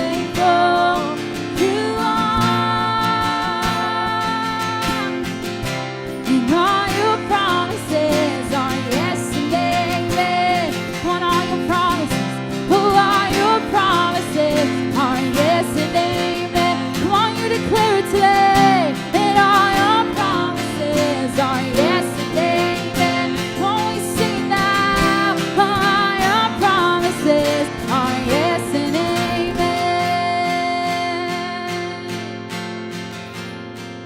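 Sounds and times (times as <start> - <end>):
guitar-led worship band: 0.0 - 34.0.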